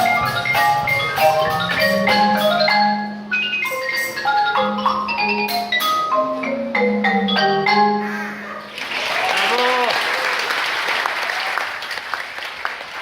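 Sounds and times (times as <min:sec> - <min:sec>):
tuned mallet percussion music: 0:00.0 - 0:08.2.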